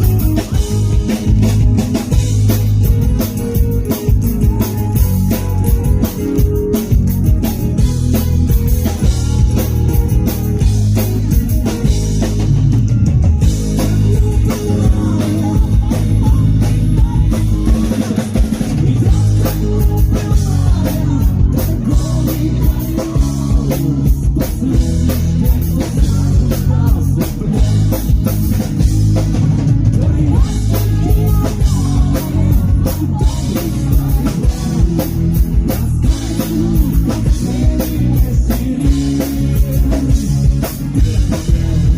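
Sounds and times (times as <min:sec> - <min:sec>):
acoustic rock band playing: 0:00.0 - 0:41.9.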